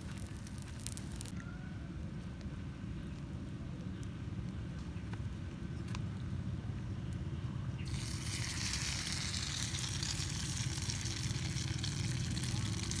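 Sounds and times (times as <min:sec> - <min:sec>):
food sizzling on hot rock: 0:00.0 - 0:01.3, 0:07.9 - 0:13.0.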